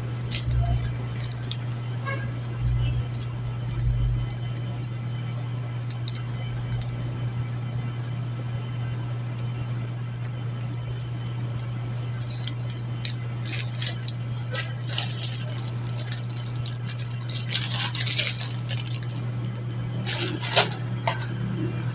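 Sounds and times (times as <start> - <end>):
steady low hum: 0.0 - 21.9
plastic bags crinkling: 0.1 - 5.0, 5.8 - 7.0, 9.8 - 21.2.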